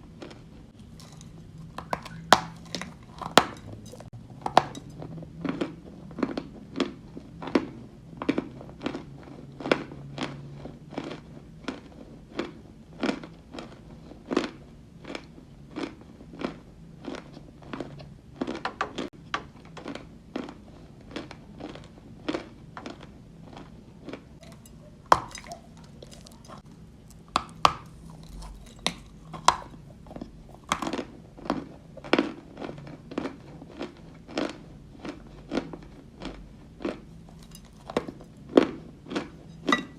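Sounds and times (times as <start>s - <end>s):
person crunching chalk: 0.1s - 4.8s, 19.8s - 39.5s.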